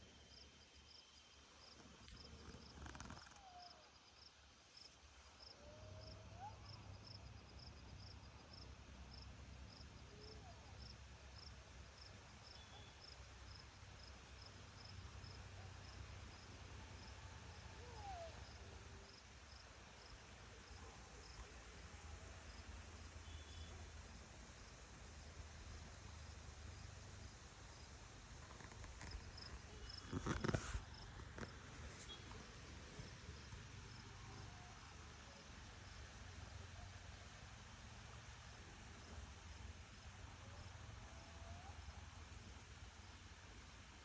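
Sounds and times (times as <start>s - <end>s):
insect chirping: 0.2s - 6.1s, 27.7s - 32.5s.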